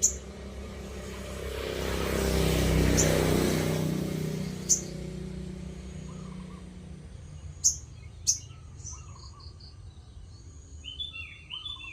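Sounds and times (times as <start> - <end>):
motor vehicle passing: 0.0 - 11.9.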